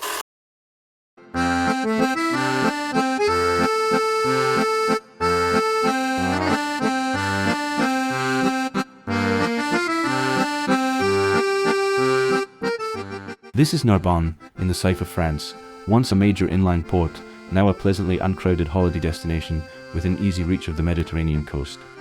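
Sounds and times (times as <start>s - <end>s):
accordion music: 1.2s - 22.0s.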